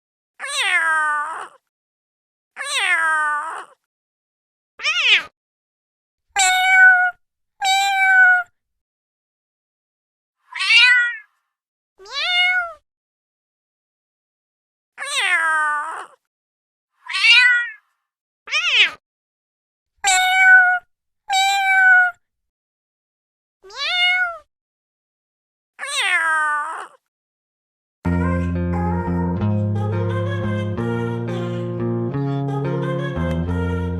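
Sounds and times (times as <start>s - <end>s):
cat meowing: 0.4s - 1.6s, 2.6s - 3.8s, 4.8s - 5.3s, 6.4s - 8.5s, 10.5s - 11.3s, 12.0s - 12.8s, 15.0s - 16.2s, 17.0s - 17.8s, 18.5s - 19.0s, 20.0s - 22.2s, 23.6s - 24.5s, 25.8s - 27.0s.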